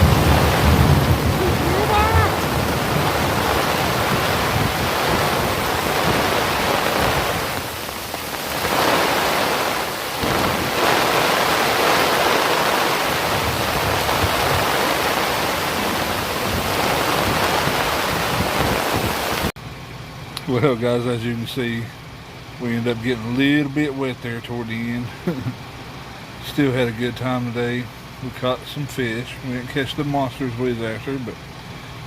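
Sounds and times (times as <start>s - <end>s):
heavy rain pouring: 0.0s - 19.6s, 22.6s - 27.0s.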